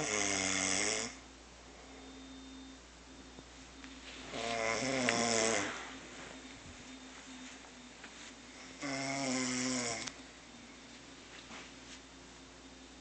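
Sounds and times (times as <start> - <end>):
person snoring: 0.0 - 1.2, 4.3 - 6.0, 8.6 - 10.1.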